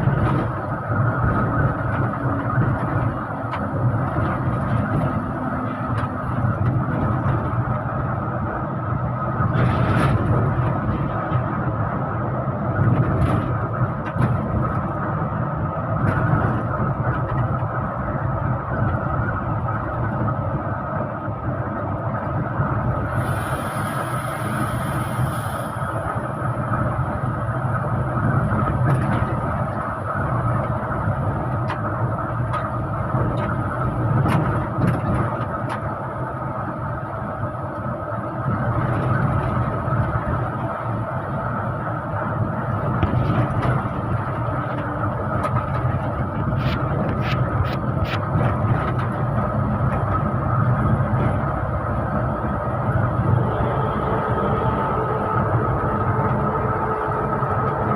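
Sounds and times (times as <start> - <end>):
bus engine and road noise: 0.0 - 57.9
hiss: 23.1 - 26.4.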